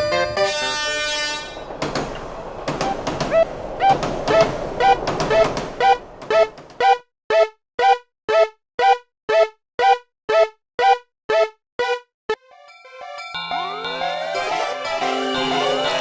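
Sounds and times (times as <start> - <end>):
music with rising glide: 12.4 - 16.0
level-crossing warning bell ringing: 12.6 - 16.0.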